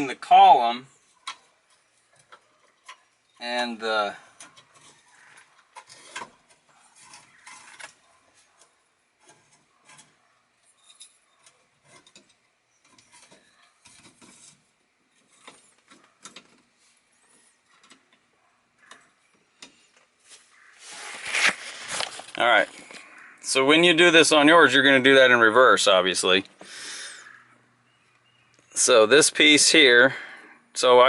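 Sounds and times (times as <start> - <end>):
small metal parts clicking and scraping: 4.3 - 8.0, 9.2 - 18.2.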